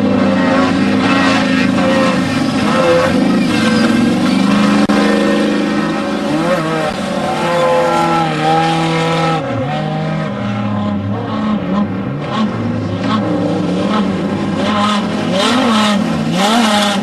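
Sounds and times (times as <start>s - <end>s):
engine revving loud: 0.0s - 17.0s.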